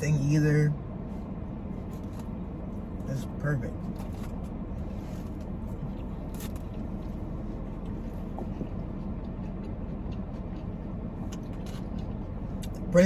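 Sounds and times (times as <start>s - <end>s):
idling car rumble from inside: 0.0s - 13.0s
person chewing fried food: 3.8s - 12.9s.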